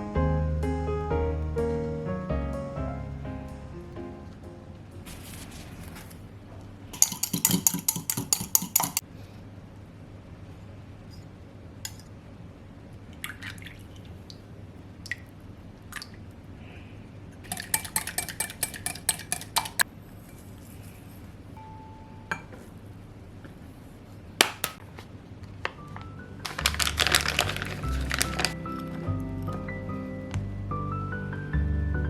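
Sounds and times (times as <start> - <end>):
soft music: 0.0 - 5.1, 25.8 - 32.0
utensils clinking against a bowl: 7.0 - 9.0, 17.4 - 19.8, 26.5 - 28.6
whisking in a bowl: 7.0 - 9.0, 17.5 - 19.8.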